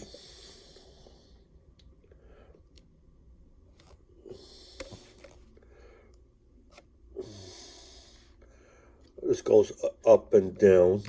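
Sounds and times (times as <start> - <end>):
soft breath-like rush: 0.0 - 2.7.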